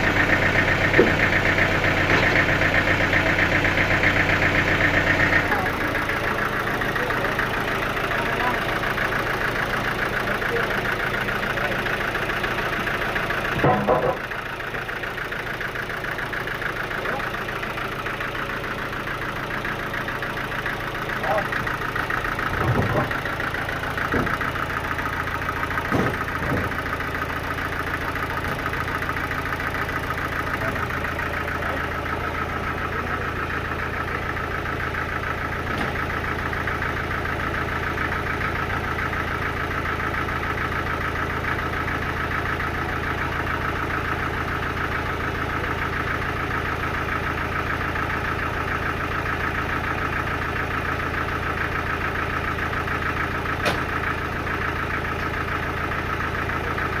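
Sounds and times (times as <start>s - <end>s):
sawmill engine running: 0.0s - 57.0s
knocks: 13.6s - 14.2s, 22.6s - 23.1s, 25.9s - 26.7s.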